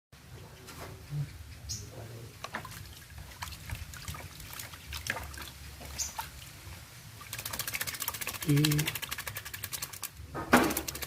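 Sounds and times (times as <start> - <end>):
water trickling and dripping: 2.4 - 10.2.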